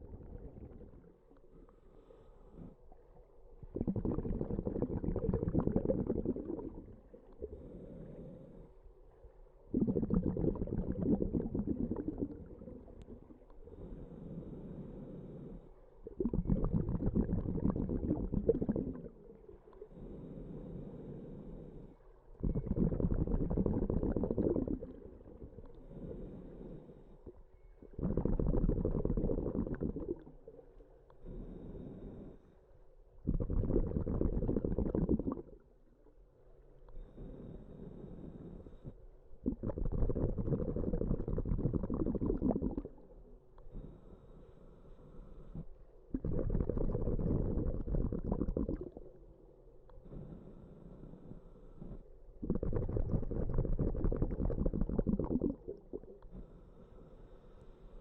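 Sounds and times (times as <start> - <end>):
bubbling exhalation: 0.0 - 1.2, 3.6 - 7.6, 9.7 - 13.4, 16.0 - 19.5, 22.4 - 26.0, 27.9 - 30.6, 33.3 - 35.6, 39.4 - 43.0, 46.1 - 49.3, 52.4 - 56.2
diver breathing through regulator: 0.0 - 2.9, 3.8 - 8.8, 9.8 - 19.2, 19.8 - 30.6, 31.2 - 32.7, 37.0 - 43.0, 43.6 - 49.2, 49.9 - 58.0.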